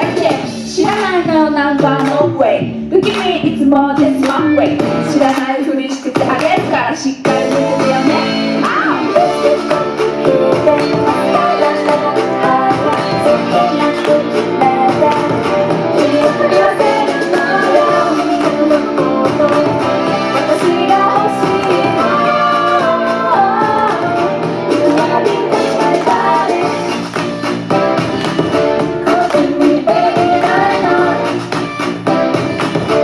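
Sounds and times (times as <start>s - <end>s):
pop song with female singing: 0.0s - 33.0s.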